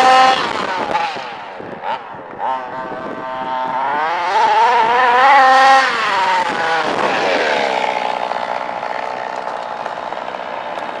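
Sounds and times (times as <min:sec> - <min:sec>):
two-stroke engine buzzing: 0:00.0 - 0:11.0.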